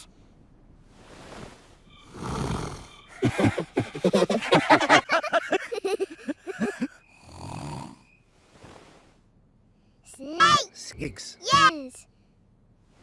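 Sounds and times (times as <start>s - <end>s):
distorted cartoon snoring: 2.0s - 5.0s, 6.5s - 8.1s
sputtering pitched vocal sounds: 2.2s - 8.0s, 10.3s - 11.8s.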